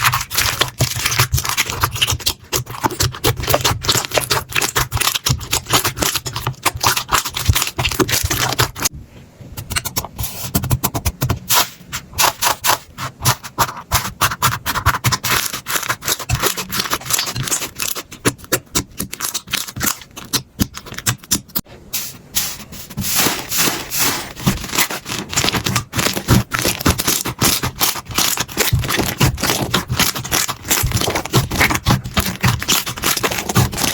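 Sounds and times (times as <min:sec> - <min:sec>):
slime crackling and popping: 0:00.0 - 0:08.9, 0:14.0 - 0:21.6, 0:23.2 - 0:33.9.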